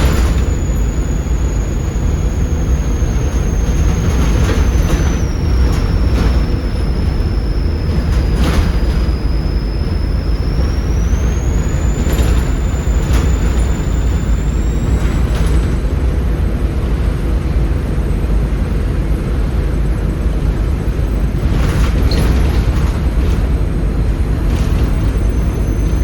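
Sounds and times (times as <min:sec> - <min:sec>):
high turbo whistle: 0:00.0 - 0:15.5
diesel bus engine rumbling: 0:00.0 - 0:26.0.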